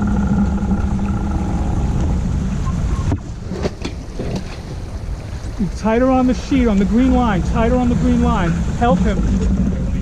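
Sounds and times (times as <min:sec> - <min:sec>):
steady motor hum: 0:00.0 - 0:03.0
water noise: 0:00.0 - 0:10.0
wind buffeting microphone: 0:00.0 - 0:10.0.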